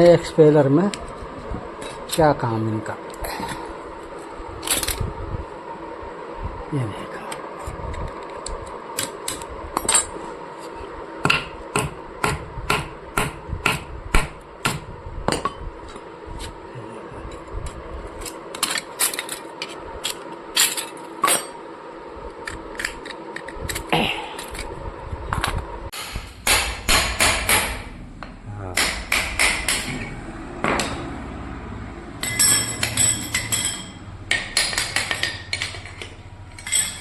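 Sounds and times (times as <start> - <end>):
steady hum: 0.0 - 37.0
hammer striking metal: 26.0 - 27.9, 28.8 - 31.1, 32.2 - 35.8.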